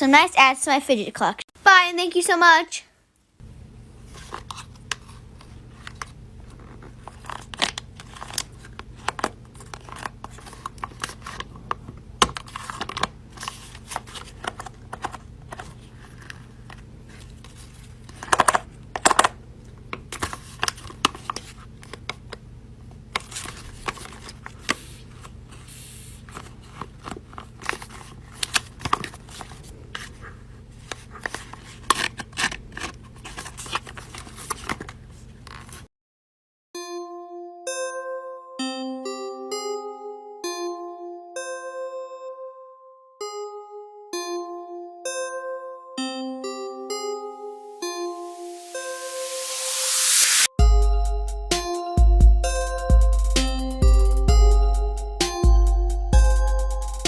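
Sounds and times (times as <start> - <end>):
crinkling and tearing: 4.1 - 11.8, 26.2 - 35.9.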